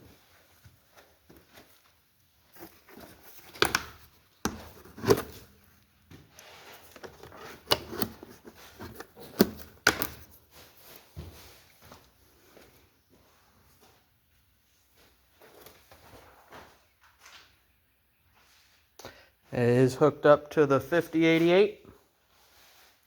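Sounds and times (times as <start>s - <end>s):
rustling: 0.1s - 14.0s.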